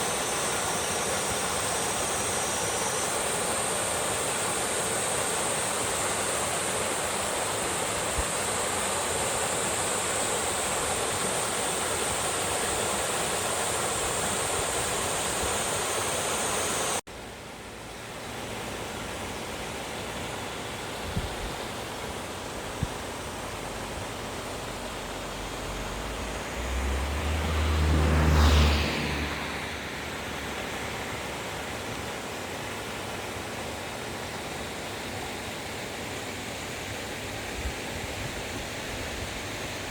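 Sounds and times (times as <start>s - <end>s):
stream rushing over rocks: 0.0s - 39.9s
vehicle passing by: 23.7s - 31.7s.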